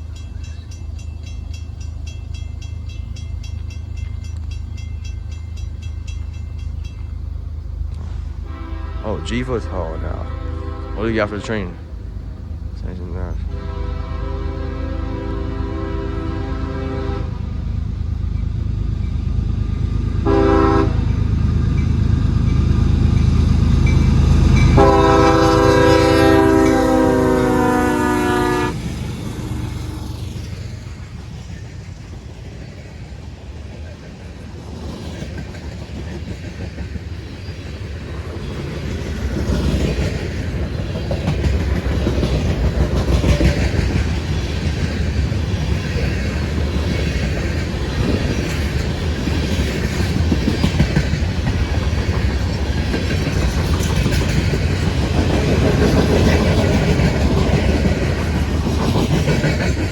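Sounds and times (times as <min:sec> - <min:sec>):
diesel engine rumble: 0:06.7 - 0:15.8
locomotive horn blasts: 0:08.4 - 0:11.8, 0:13.5 - 0:17.5, 0:20.2 - 0:21.1, 0:24.7 - 0:28.8.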